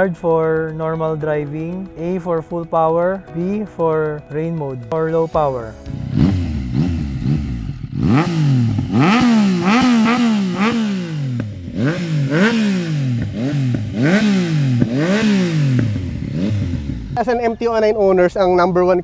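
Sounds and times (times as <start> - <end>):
motorcycle engine revving: 5.6 - 17.9.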